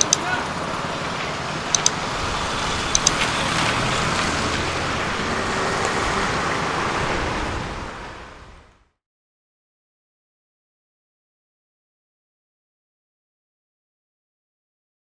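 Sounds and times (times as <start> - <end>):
sharp clicks: 0.0 - 0.4, 1.7 - 2.0, 2.9 - 3.7
rushing noise with low rumble: 0.0 - 8.9.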